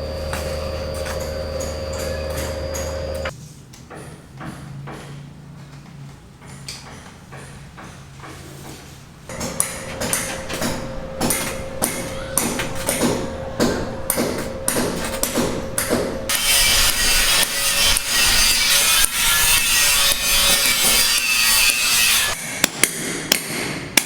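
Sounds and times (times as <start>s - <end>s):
steady hum: 0.0s - 3.3s, 9.3s - 22.4s
continuous rasping noise: 0.0s - 3.4s, 8.4s - 22.4s
regular knocks: 9.3s - 17.7s.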